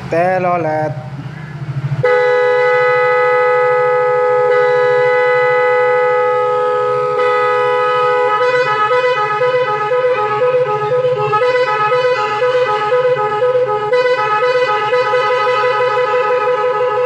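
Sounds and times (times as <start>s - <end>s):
multi-tone scooter horn: 2.0s - 17.0s.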